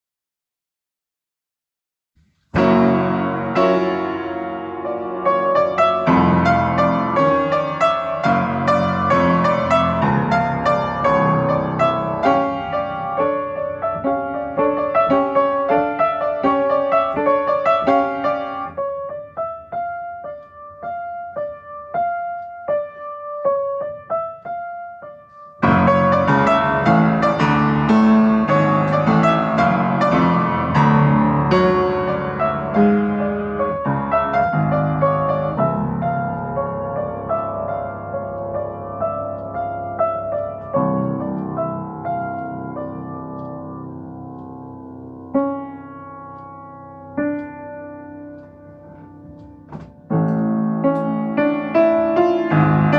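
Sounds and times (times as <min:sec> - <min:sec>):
solo piano playing: 0:02.2 - 0:52.9.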